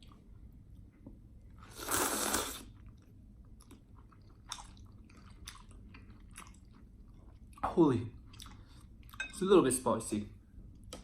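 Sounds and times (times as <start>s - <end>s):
chewing food: 2.4s - 9.2s.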